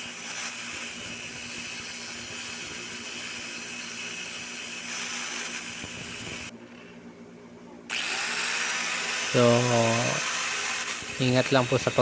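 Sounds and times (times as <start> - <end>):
electric grinder grinding: 0.0 - 6.5, 7.9 - 12.0.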